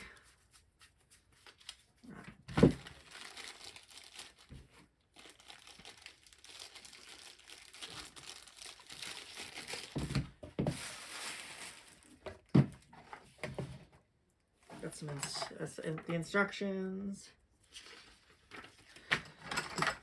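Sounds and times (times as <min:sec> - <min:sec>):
packaging crinkling and rustling: 0:01.4 - 0:13.4.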